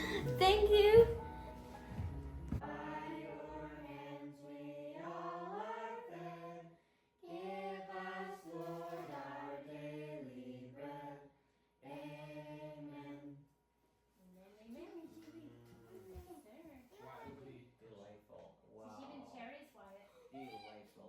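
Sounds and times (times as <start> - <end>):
choir singing held notes: 0.0 - 6.5.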